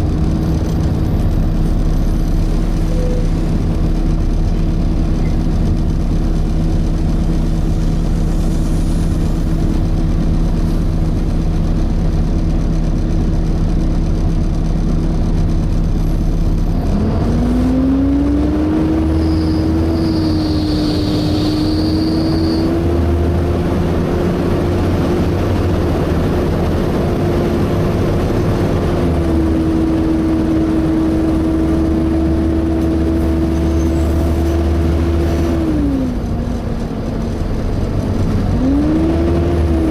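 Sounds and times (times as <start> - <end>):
bus engine running: 0.0 - 39.9
brief high screech: 19.1 - 22.7.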